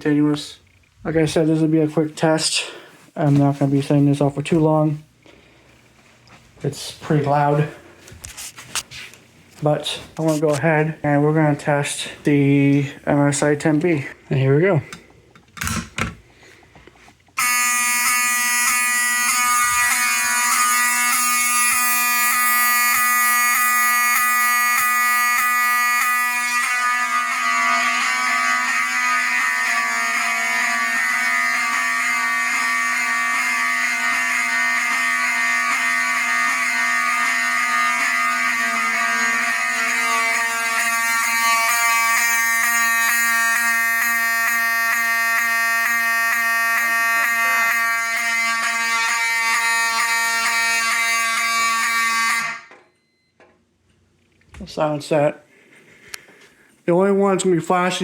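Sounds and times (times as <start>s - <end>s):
buzzing alarm horn: 17.4s - 53.4s.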